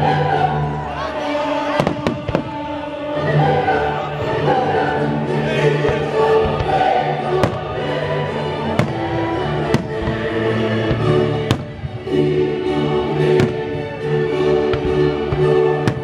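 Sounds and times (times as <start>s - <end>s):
orchestral music: 0.0s - 16.0s
fireworks bursting with sharp bangs: 1.6s - 2.9s, 5.8s - 8.0s, 8.6s - 12.2s, 13.3s - 14.0s, 14.6s - 16.0s.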